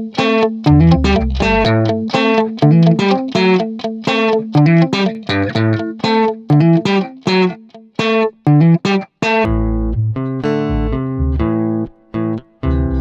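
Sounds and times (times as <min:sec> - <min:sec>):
plucked guitar: 0:00.0 - 0:13.0
bass: 0:00.7 - 0:02.1, 0:09.5 - 0:13.0.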